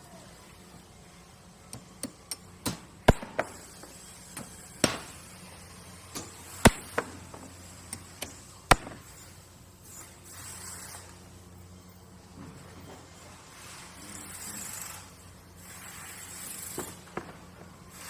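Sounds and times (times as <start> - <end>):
knocks and bangs on hard material: 6.2 - 7.5.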